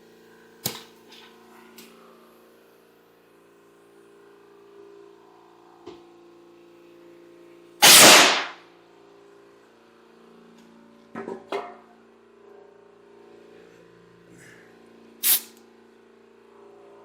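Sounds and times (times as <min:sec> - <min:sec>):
loud rush of compressed air: 0:07.8 - 0:08.6, 0:15.2 - 0:15.6.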